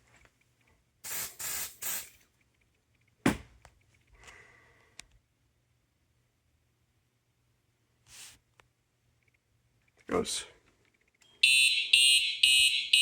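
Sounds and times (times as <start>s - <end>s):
aerosol spray hissing: 1.0s - 2.2s.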